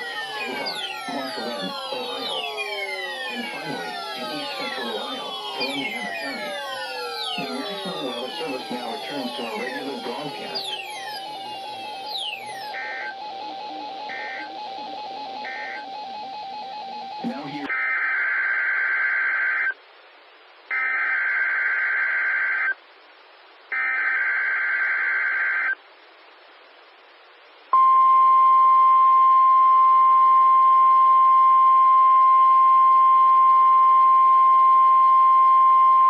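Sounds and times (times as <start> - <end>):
steady single-pitch alarm tone: 0.0 - 17.7, 27.8 - 36.0
screechy digital data bursts: 0.0 - 19.8.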